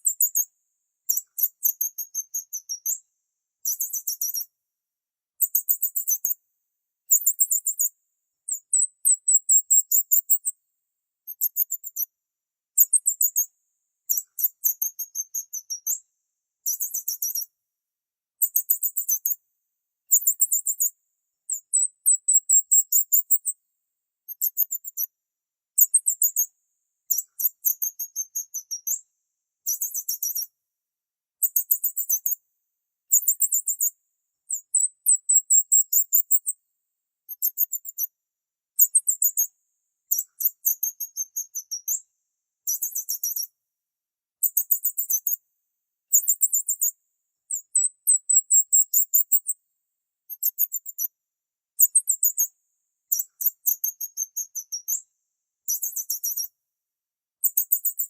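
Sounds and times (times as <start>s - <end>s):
small birds chirping rapidly: 0.0s - 0.5s, 1.1s - 3.0s, 3.6s - 4.4s, 5.4s - 6.4s, 7.1s - 7.9s, 16.6s - 17.5s, 20.1s - 20.9s, 21.5s - 23.6s, 25.8s - 26.5s, 27.1s - 29.0s, 29.6s - 30.5s, 31.4s - 32.4s, 33.1s - 33.9s, 34.5s - 36.6s, 40.1s - 42.0s, 42.6s - 43.5s, 44.4s - 45.4s, 46.1s - 46.9s, 47.5s - 49.6s, 50.3s - 51.1s, 51.9s - 52.5s, 53.1s - 55.0s, 55.6s - 56.5s.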